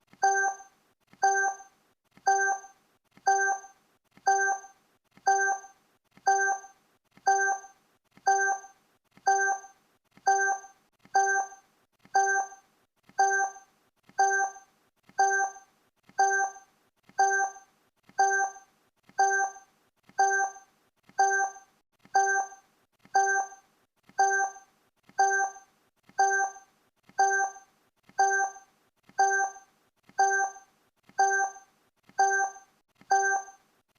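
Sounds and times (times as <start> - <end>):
short pitched timer blips: 25.2 - 33.6.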